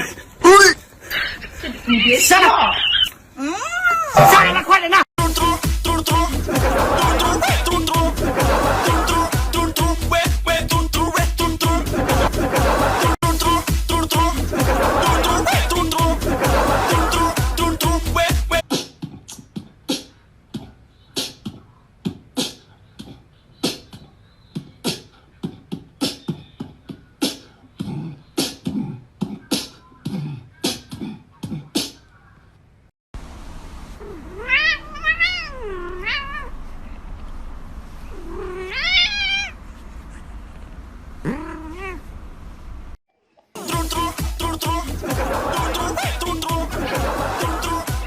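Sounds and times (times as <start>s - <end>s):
cat meowing: 34.0s - 36.5s, 38.1s - 39.6s, 41.2s - 42.0s.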